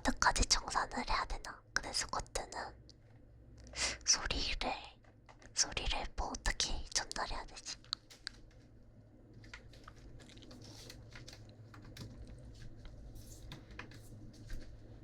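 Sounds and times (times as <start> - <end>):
chewing and crunching snack: 9.4 - 13.0.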